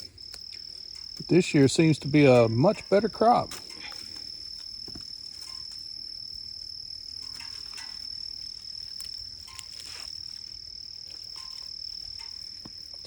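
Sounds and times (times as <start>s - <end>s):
insects droning: 0.0s - 13.0s
faint rustles and clicks: 7.1s - 13.0s.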